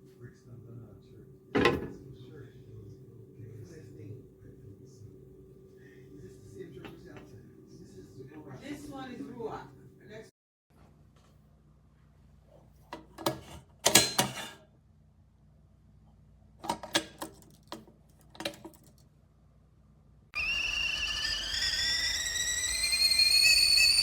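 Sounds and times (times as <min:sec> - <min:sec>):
kettle whistling: 0:20.4 - 0:24.0.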